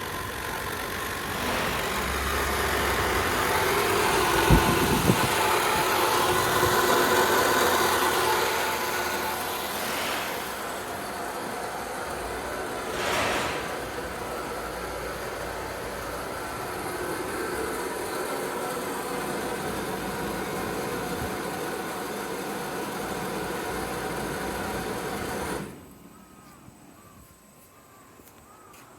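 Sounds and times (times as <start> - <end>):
chiller fan and compressor hum: 0.0 - 28.7
short loud rush: 9.3 - 14.9
faint bird calls: 26.0 - 28.9.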